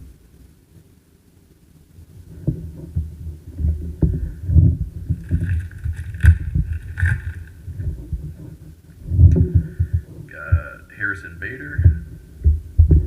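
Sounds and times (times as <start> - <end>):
cards scraping over each other: 5.2 - 7.6.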